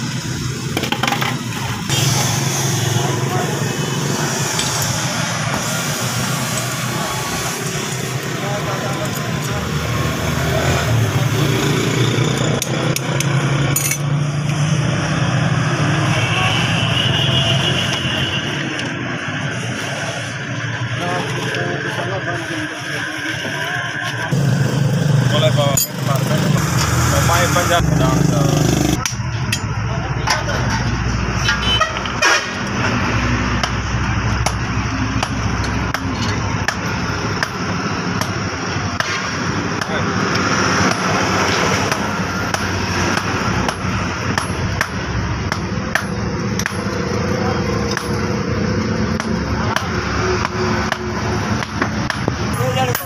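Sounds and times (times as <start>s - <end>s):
hammer striking steel on anvil: 41.9s - 47.0s.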